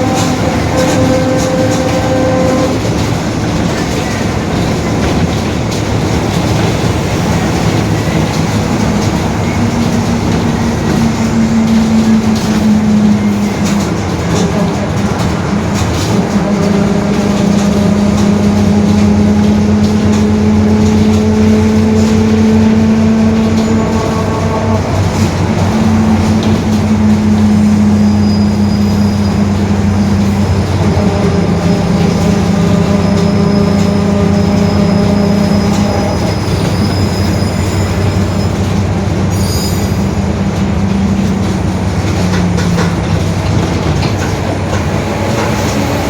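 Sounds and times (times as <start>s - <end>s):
bus diesel engine: 0.0s - 46.0s
droning differential whine: 7.8s - 44.0s.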